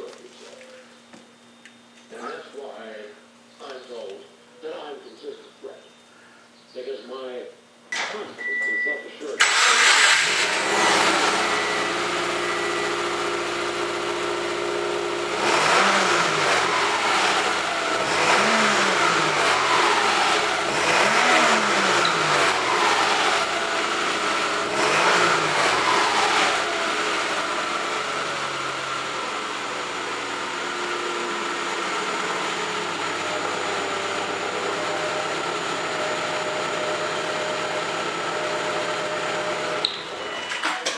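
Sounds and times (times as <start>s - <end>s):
car engine idling and revving: 9.4s - 39.9s.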